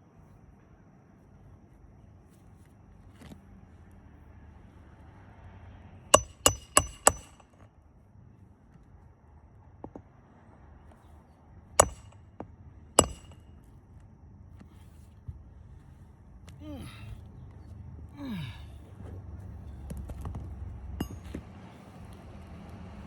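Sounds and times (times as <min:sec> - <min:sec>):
hammer striking nails: 0:06.1 - 0:07.6, 0:11.8 - 0:12.3, 0:13.0 - 0:13.4, 0:21.0 - 0:21.4.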